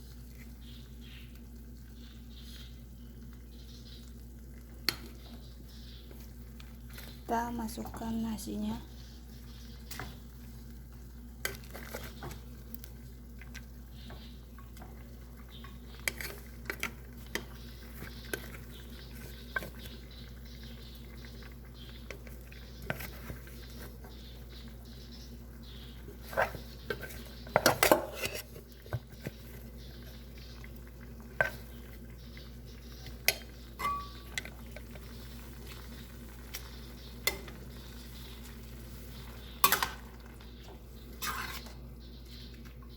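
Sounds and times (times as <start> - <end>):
utensil stirring in a pot: 0.0 - 42.6
clatter of utensil on pot: 39.6 - 40.0.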